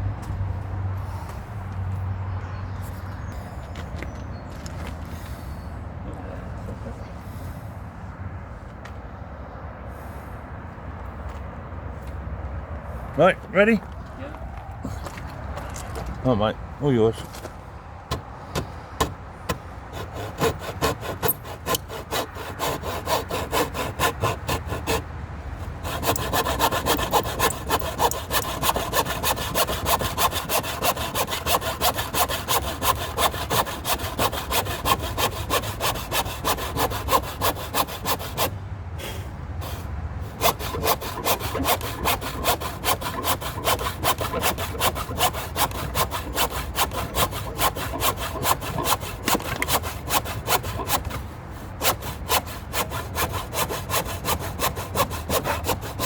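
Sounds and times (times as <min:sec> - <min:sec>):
hand saw cutting timber: 0:18.1 - 0:56.0.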